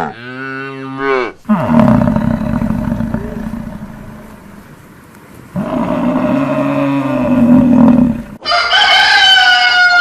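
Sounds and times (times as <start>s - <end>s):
deep animal call: 0.0s - 4.4s.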